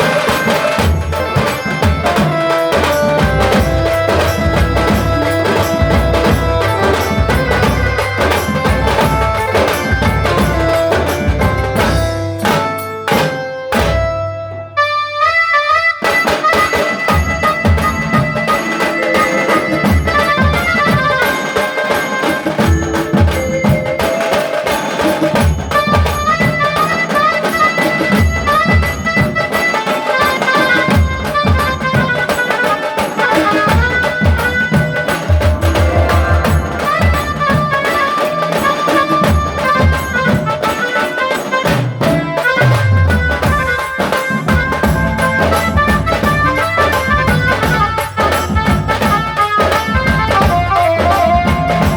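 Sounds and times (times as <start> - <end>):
drum strokes: 0.0 - 14.3, 16.0 - 51.9
held melody line: 0.0 - 51.9
drum roll: 33.6 - 40.8.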